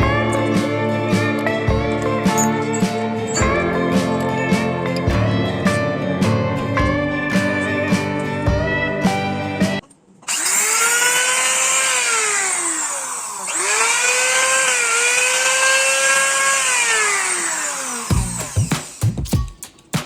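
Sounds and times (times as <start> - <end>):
wood trimmer motor whine: 0.0 - 5.8, 10.2 - 19.2.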